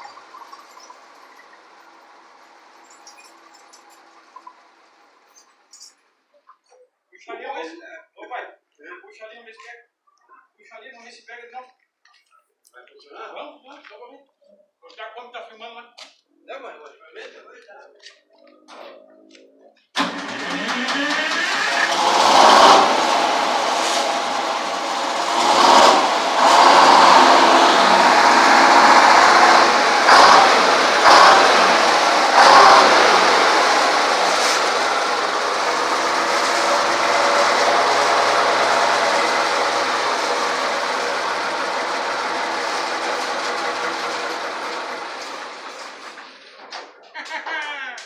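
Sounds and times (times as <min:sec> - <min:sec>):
diesel engine running loud: 0:00.0 - 0:05.1, 0:20.0 - 0:46.5.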